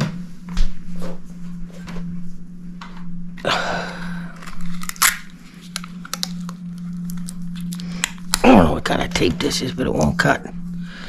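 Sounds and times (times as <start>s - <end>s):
steady low hum: 0.0s - 11.0s
tape clicks and rustles: 4.4s - 8.5s.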